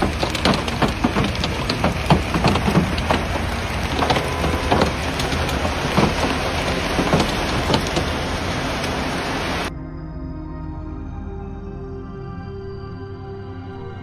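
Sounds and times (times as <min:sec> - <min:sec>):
heavy rain on hard surface: 0:00.0 - 0:09.7.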